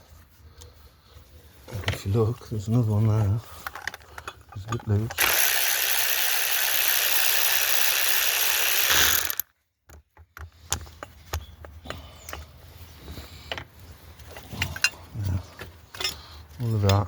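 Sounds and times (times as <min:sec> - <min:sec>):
handheld power tool running: 0:05.2 - 0:09.5.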